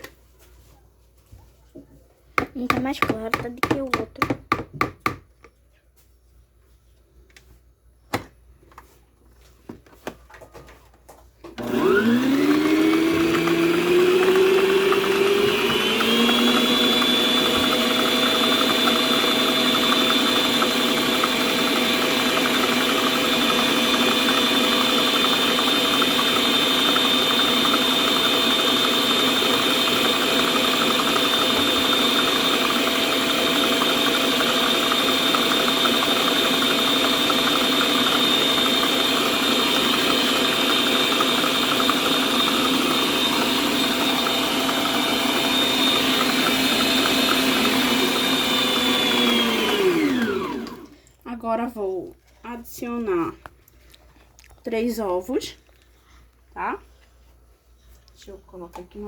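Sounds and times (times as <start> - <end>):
stand mixer motor whine: 11.6 - 51.0.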